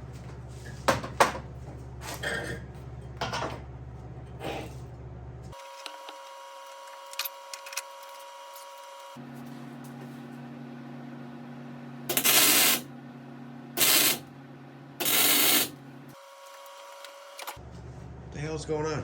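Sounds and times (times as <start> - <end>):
welder humming: 12.0 - 12.9, 13.8 - 14.3, 15.0 - 17.6.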